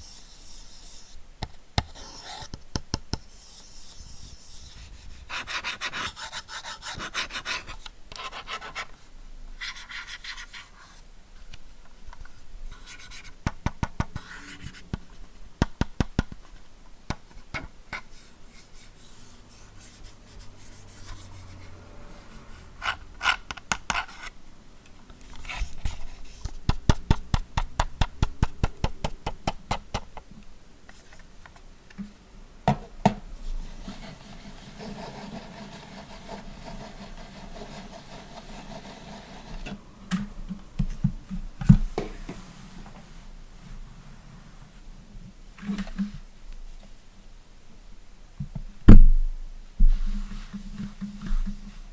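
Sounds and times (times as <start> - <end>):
mouse scratching on mouse pad: 33.8 - 39.7.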